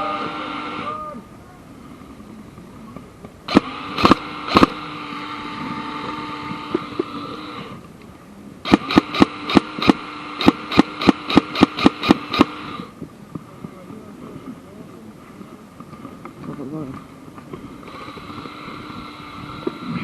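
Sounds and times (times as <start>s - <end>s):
steady whine: 0.0s - 20.0s
airsoft gun shots: 3.5s - 4.9s, 8.6s - 12.9s.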